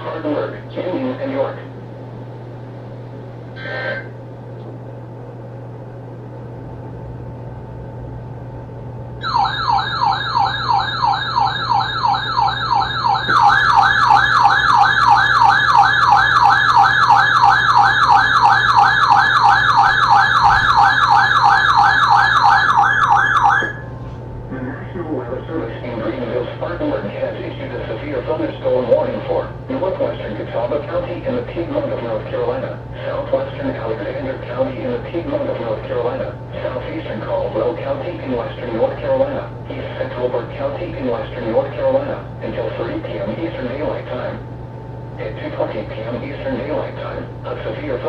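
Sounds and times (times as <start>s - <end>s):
weather radio alert siren: 9.2s - 24.0s.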